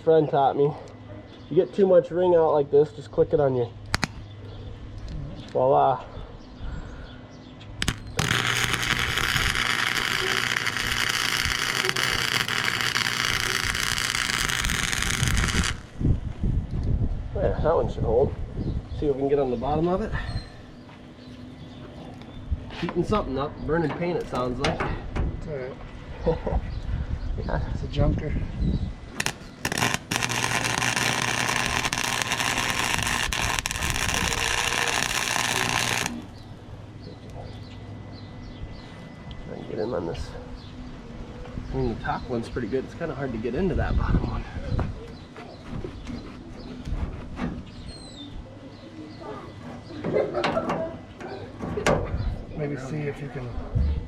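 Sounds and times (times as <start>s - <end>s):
welder arc crackling: 3.9s - 4.2s, 7.8s - 16.1s, 29.2s - 36.6s.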